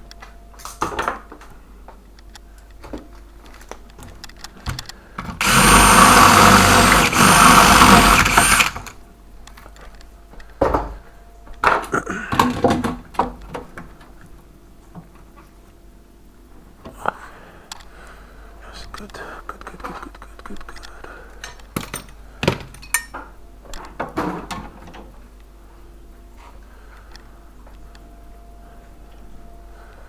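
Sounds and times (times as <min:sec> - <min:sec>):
power drill whining: 0:05.4 - 0:09.0.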